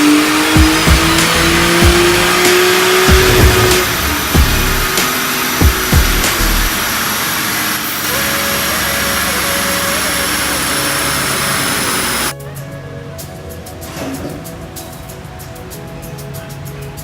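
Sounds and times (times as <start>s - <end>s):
car engine and exhaust rushing: 0.0s - 12.3s
exhaust cracks: 0.0s - 12.3s.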